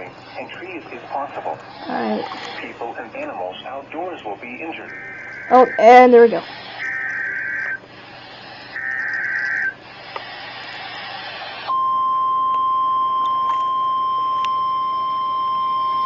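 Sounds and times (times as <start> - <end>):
radio static: 0.0 - 11.7
digital data bursts screeching: 1.6 - 2.8, 4.0 - 11.7
steady alarm tone: 4.4 - 16.0.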